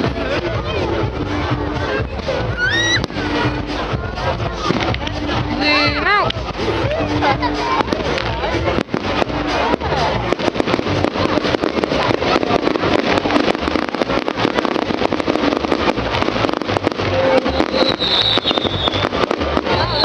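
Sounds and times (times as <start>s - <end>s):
fireworks crackling and popping: 0.0s - 20.0s
low thuds of fireworks: 0.0s - 20.0s
high whistling firework: 2.3s - 3.5s, 7.8s - 20.0s.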